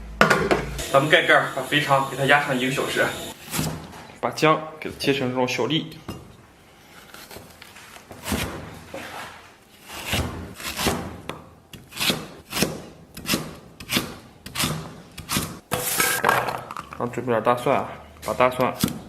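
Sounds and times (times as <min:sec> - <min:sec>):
knife chopping on wooden board: 0:10.0 - 0:15.9.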